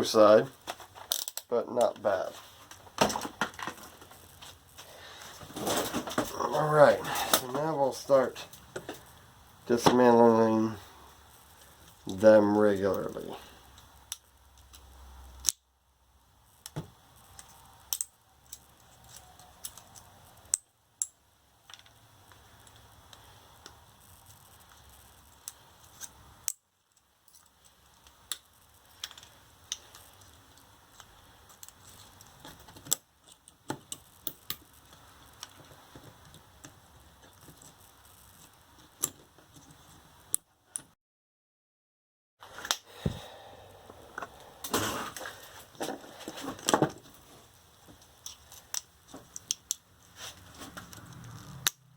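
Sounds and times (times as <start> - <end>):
faint steady background noise: 0.0 - 41.0, 42.4 - 51.9
small clicks and snaps: 13.7 - 40.9, 47.9 - 49.9, 50.7 - 51.9.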